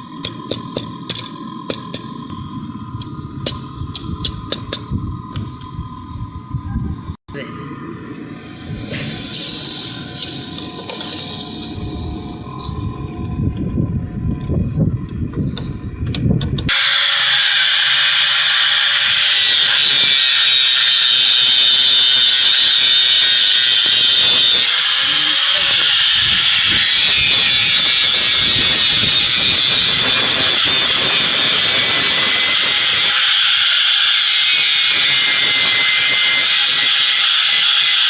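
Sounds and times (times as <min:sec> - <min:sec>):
power tool whining against steel: 0:16.7 - 0:38.0.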